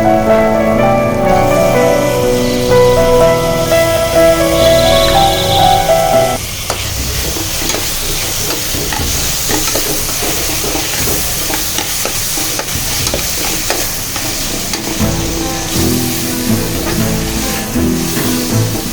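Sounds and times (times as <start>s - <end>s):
gravy sizzling in a pan: 0.0s - 18.9s
utensil scraping against pan: 6.7s - 18.9s.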